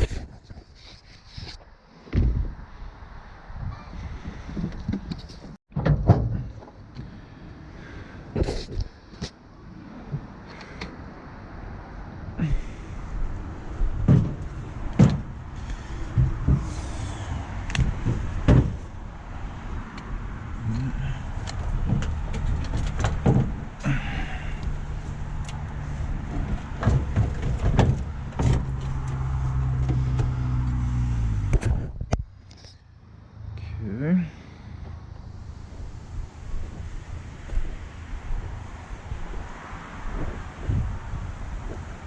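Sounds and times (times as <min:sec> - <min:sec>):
sharp knocks: 0:17.7 - 0:18.8.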